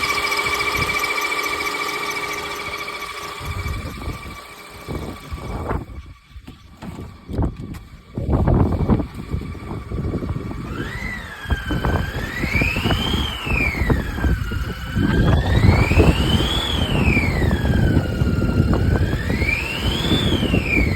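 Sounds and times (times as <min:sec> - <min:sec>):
high-pitched engine whine: 0:00.0 - 0:20.9
rough engine rumble: 0:00.0 - 0:20.9.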